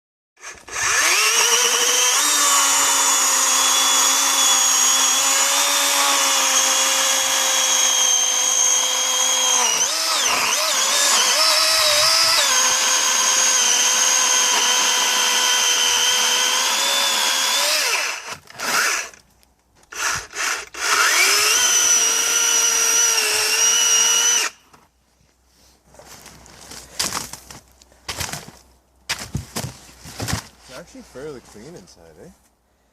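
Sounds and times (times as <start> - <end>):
electric chainsaw whining: 0.4 - 19.2, 19.9 - 24.6.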